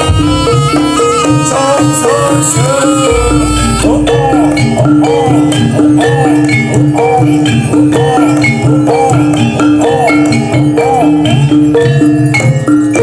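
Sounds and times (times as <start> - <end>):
bending high melody line: 0.0 - 13.0
metallophones striking short notes: 0.0 - 13.0
low drone: 3.1 - 6.8.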